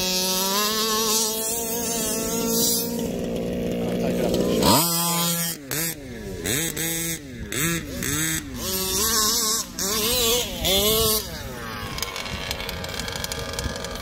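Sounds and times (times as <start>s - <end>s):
small two-stroke engines revving: 0.0s - 14.0s.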